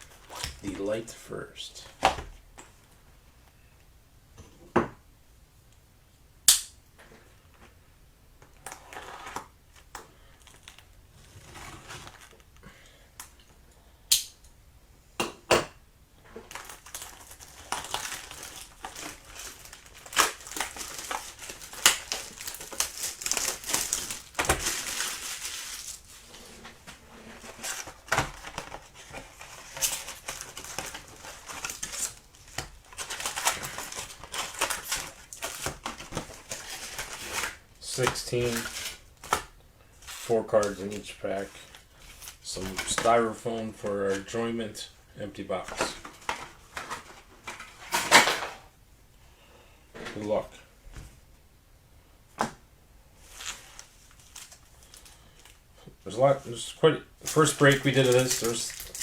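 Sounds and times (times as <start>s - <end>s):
sharp snaps and clicks: 6.4s - 6.8s, 14.1s - 14.5s
plastic wrap crinkling and tearing: 16.4s - 43.2s, 53.2s - 55.6s, 57.2s - 59.0s.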